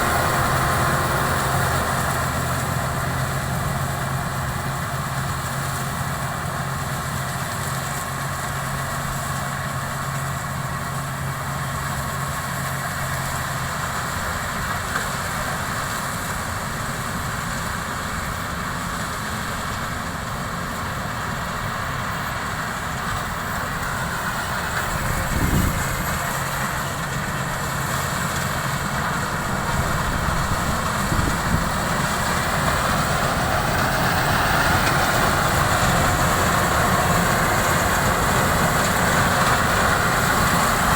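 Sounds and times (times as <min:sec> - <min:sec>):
combine harvester engine running: 0:00.0 - 0:40.9.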